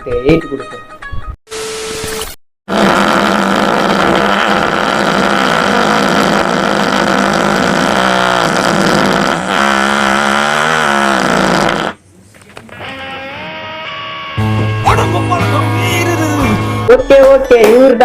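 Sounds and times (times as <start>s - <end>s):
long loud fart: 2.7s - 12.0s.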